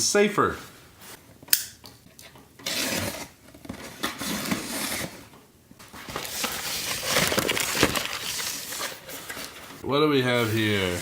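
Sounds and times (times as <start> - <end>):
packaging rustling and scraping: 2.2 - 11.0.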